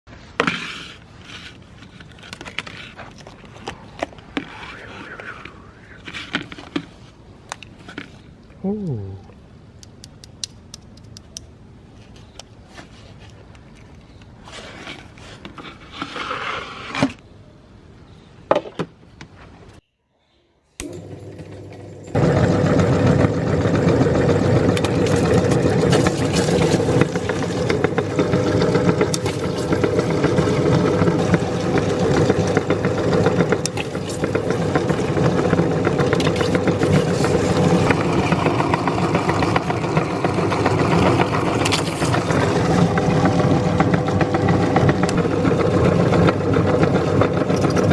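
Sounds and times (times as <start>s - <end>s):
electric meat grinder running: 20.8s - 47.9s.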